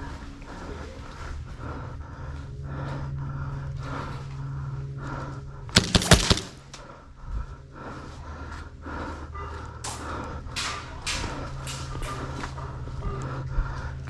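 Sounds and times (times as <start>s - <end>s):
airsoft gun shots: 5.8s - 6.6s.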